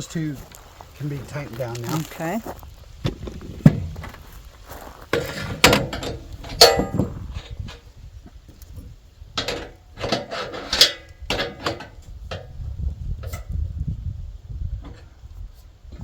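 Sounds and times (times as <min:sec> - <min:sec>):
metal clanks and scrapes: 0:03.1 - 0:04.4, 0:05.0 - 0:07.9, 0:09.3 - 0:13.6.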